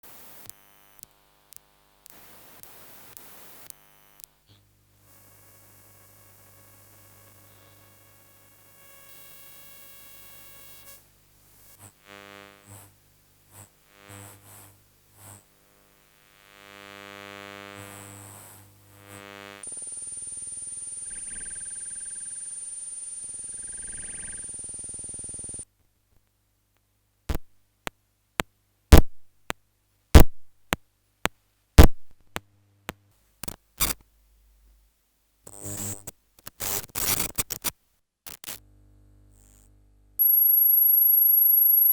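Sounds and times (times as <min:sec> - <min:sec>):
steady high-pitched electronic tone: 0:19.6 - 0:25.2
sharp electronic clicks: 0:19.6 - 0:25.6, 0:28.9 - 0:29.2, 0:30.2 - 0:30.5, 0:31.8 - 0:32.1, 0:40.2 - 0:41.9.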